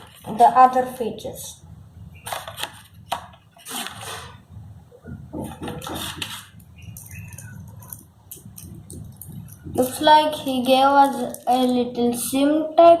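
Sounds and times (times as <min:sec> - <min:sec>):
packaging rustling: 0:02.2 - 0:04.4.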